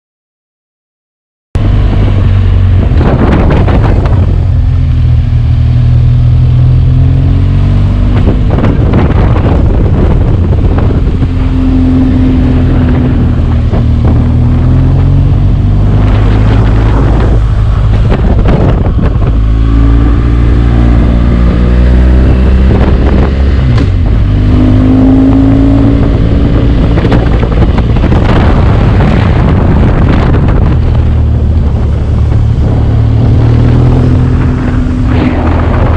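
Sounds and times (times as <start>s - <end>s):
motorcycle engine running: 1.6s - 35.9s.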